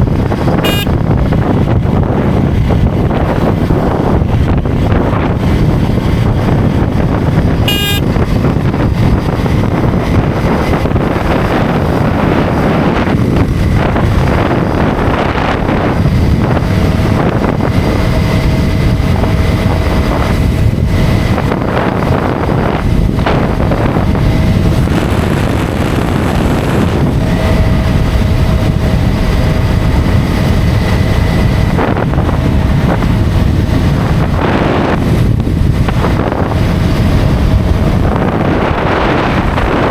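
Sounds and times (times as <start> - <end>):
motorcycle engine and road rumble: 0.0 - 39.9
wind buffeting microphone: 0.0 - 39.9
vehicle horn: 0.5 - 1.0, 7.6 - 8.2.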